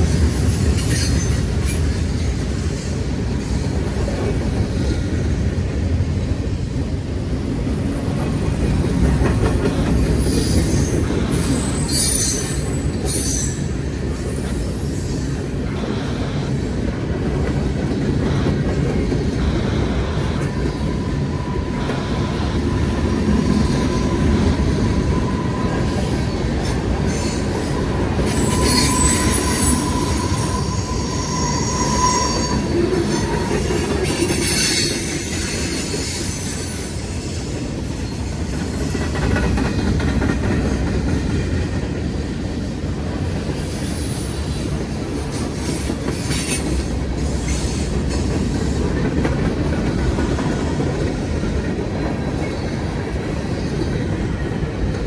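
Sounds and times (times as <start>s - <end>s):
freight train wheels rumbling on rail: 0.0s - 55.0s
thin wheel squeal: 10.3s - 13.7s, 27.1s - 37.2s
high-pitched flange squeals: 20.4s - 37.2s.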